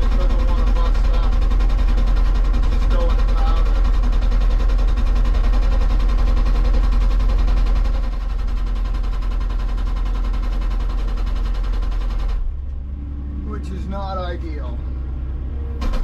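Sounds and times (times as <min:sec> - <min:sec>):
hydraulic breaker pounding rock: 0:00.0 - 0:12.5, 0:15.8 - 0:16.0
diesel engine: 0:00.0 - 0:16.0.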